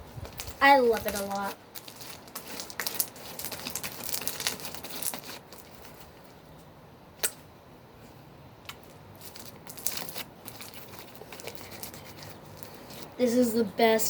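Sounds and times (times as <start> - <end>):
slime crackling and popping: 0.3 - 6.1, 9.2 - 13.0.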